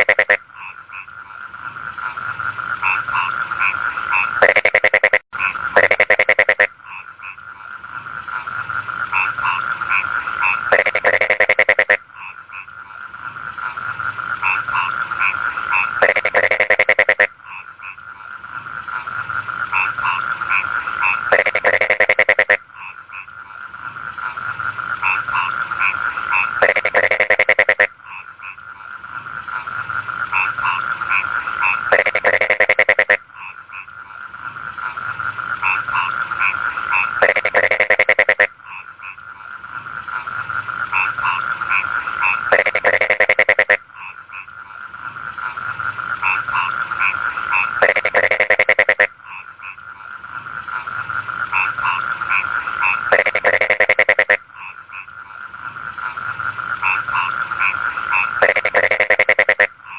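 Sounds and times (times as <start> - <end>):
frog chorus: 0.0 - 59.9
rapid frog croaks: 0.0 - 59.9
short pulsed frog calls: 0.0 - 59.9.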